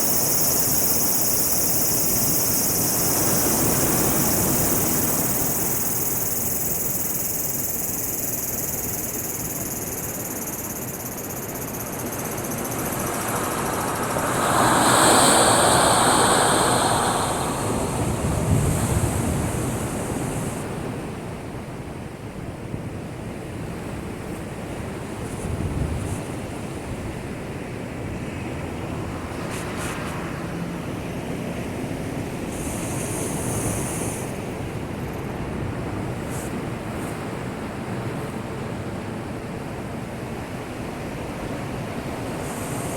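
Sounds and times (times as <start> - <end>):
surf crashing on breakwater: 11.4 - 20.6.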